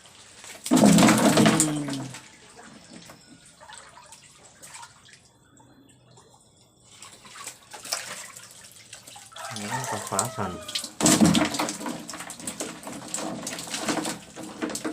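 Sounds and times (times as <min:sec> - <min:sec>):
water splashing and dripping: 0:00.0 - 0:14.9
loud voice-like sound: 0:09.5 - 0:10.8.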